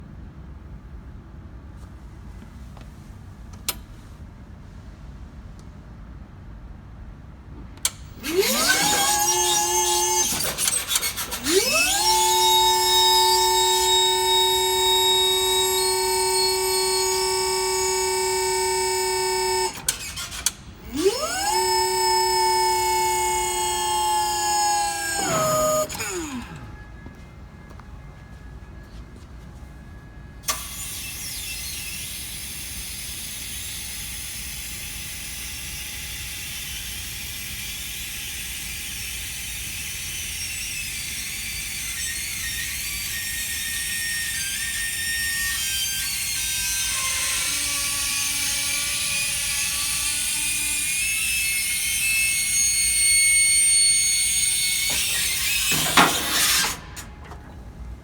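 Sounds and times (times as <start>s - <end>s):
hydraulic pump motor whining: 7.8s - 27.8s, 39.2s - 57.9s.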